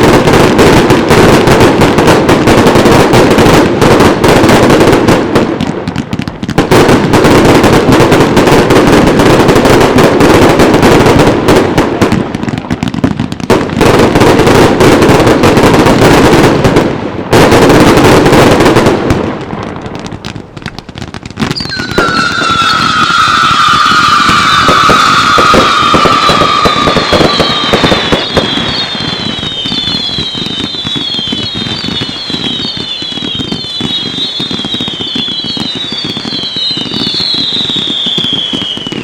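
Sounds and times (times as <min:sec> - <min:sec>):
fireworks bangs and crackling: 0:00.0 - 0:39.0
descending firework whistles: 0:21.4 - 0:39.0.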